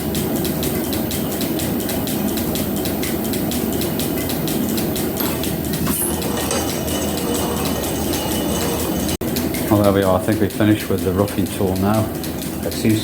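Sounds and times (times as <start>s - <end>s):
fast even ticking: 0.0s - 13.0s
metal planer cutting steel: 5.9s - 9.2s.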